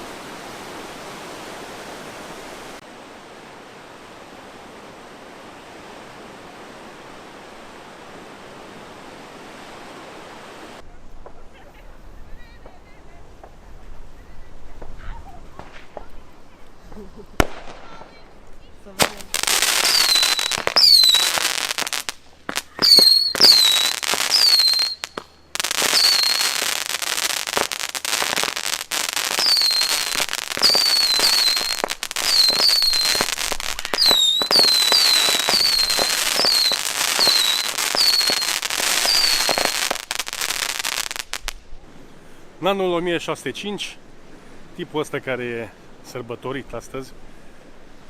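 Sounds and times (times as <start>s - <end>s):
fireworks crackling: 0.0s - 48.0s
fireworks whistling: 16.9s - 18.4s, 19.0s - 41.6s.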